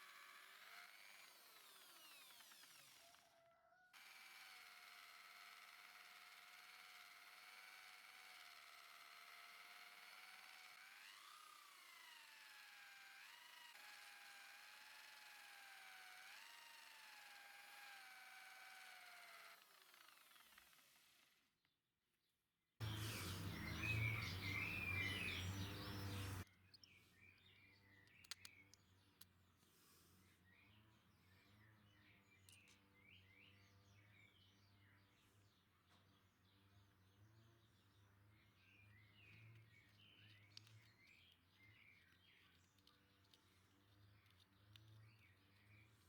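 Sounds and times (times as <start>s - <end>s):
small motor whine: 0.0s - 21.5s, 22.8s - 46.0s
birds chirping: 22.8s - 29.1s.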